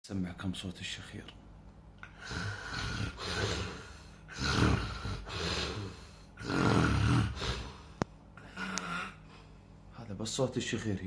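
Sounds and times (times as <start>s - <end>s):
person snoring: 2.0s - 9.2s.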